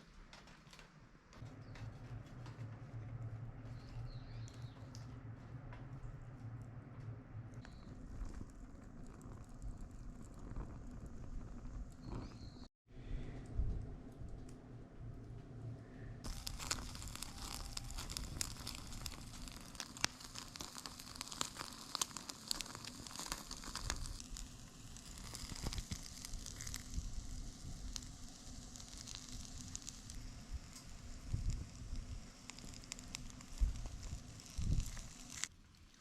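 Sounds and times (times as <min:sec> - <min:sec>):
wood fire crackling: 0:00.0 - 0:15.6, 0:16.2 - 0:36.0
low rumble: 0:01.4 - 0:12.3.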